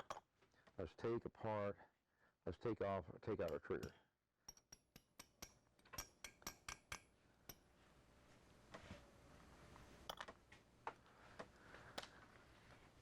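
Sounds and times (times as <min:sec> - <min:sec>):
small hammer tapping metal: 0:03.4 - 0:07.6.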